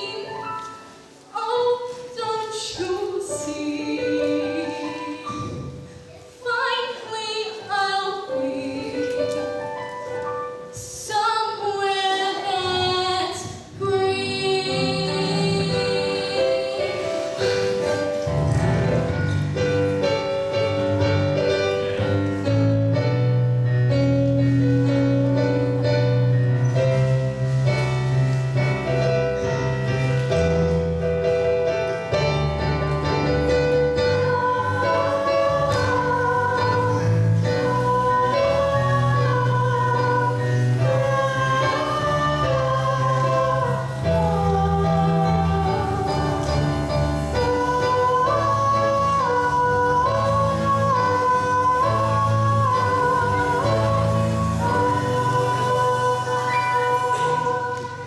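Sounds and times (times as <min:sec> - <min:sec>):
person singing: 0:10.8 - 0:18.4, 0:28.8 - 0:58.0.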